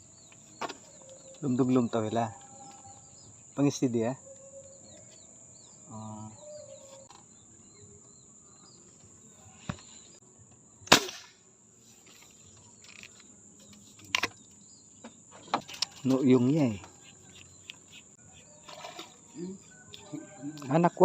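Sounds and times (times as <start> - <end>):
bird chirps: 0.0 - 10.9
crickets droning: 0.0 - 21.0.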